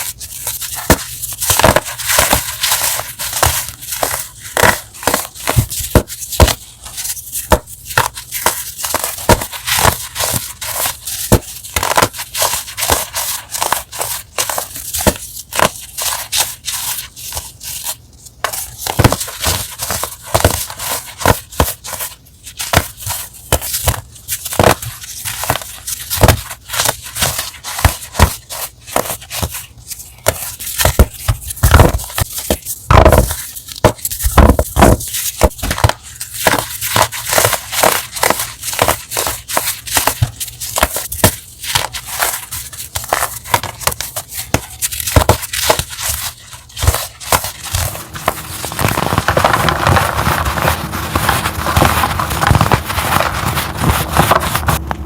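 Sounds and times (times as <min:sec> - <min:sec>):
chalk being crushed: 0:00.0 - 0:55.0.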